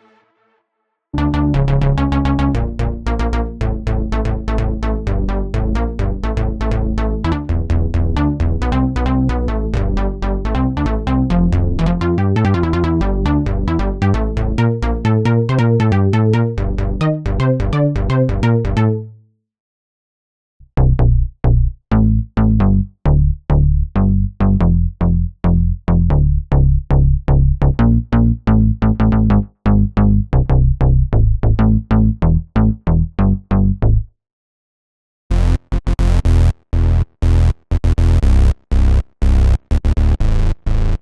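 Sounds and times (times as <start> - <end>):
sequenced synthesizer pattern: 1.2 - 19.1.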